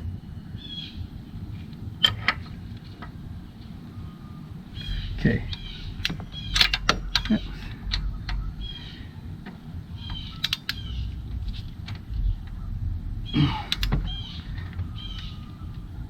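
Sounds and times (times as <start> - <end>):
steady low hum: 0.0 - 16.0
torque wrench clicking: 9.4 - 12.6.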